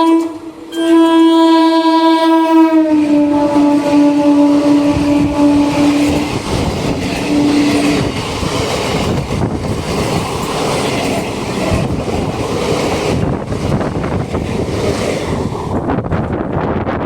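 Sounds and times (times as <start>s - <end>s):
train horn blasts: 0.0s - 6.3s, 7.2s - 8.1s
train wheels clattering on rails: 4.4s - 17.0s.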